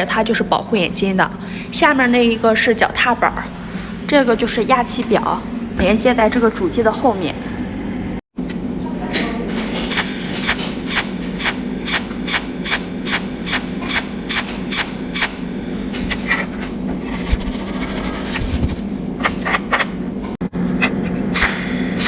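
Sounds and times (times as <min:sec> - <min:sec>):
steady low hum: 0:00.0 - 0:22.0
welder crackling ticks: 0:09.9 - 0:15.7.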